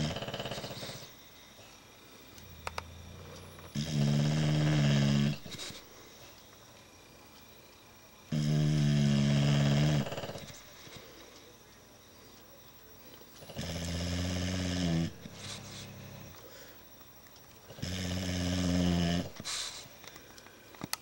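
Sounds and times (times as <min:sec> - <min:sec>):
dog snoring: 0:00.0 - 0:01.2, 0:02.5 - 0:05.8, 0:08.3 - 0:10.7, 0:13.4 - 0:16.4, 0:17.7 - 0:19.8
quiet breathing: 0:00.0 - 0:07.6, 0:09.7 - 0:21.0.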